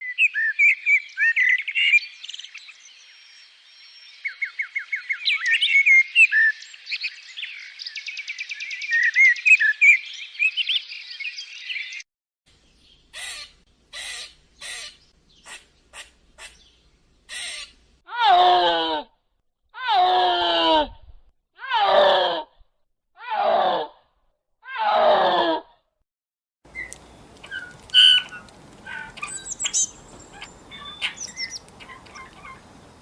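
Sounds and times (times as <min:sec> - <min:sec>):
songbirds singing and chirping: 0:00.0 - 0:13.2, 0:14.3 - 0:17.8, 0:26.7 - 0:33.0.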